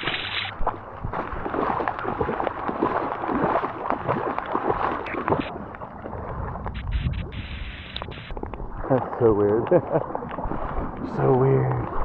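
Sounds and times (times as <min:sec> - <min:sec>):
water sloshing and splashing: 0:00.0 - 0:12.0.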